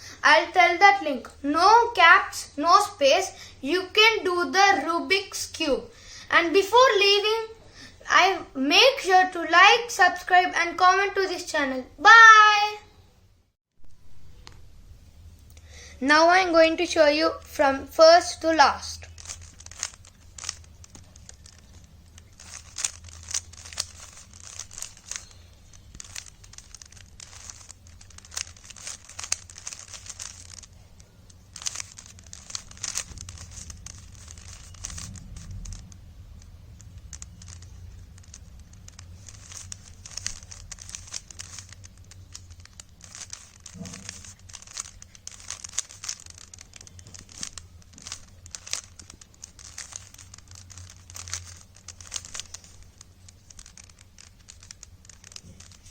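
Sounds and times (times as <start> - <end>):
plastic puzzle cube clicking: 19.0 - 55.9.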